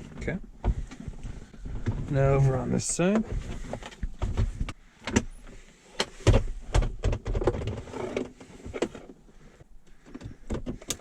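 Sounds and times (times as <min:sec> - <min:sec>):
plastic trim clicking and creaking: 0:09.9 - 0:11.0.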